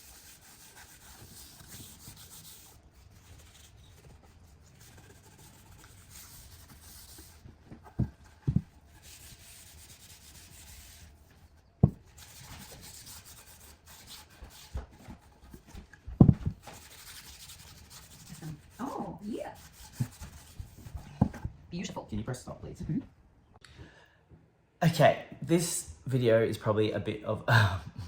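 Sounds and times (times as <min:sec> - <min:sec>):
sanding wood by hand: 0:00.0 - 0:07.4, 0:08.8 - 0:11.4, 0:12.1 - 0:15.8, 0:16.6 - 0:21.0
dull thumps: 0:07.4 - 0:08.8, 0:11.8 - 0:12.0.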